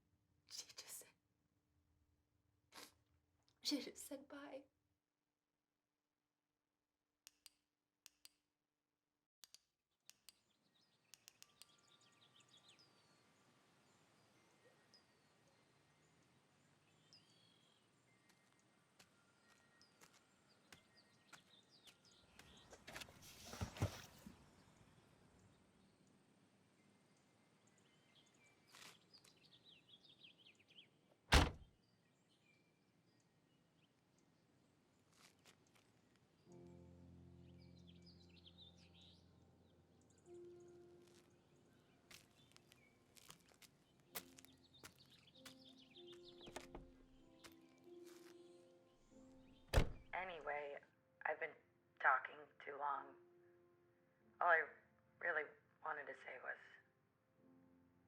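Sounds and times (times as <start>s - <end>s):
small birds chirping: 9.4s - 36.5s, 37.6s - 50.2s.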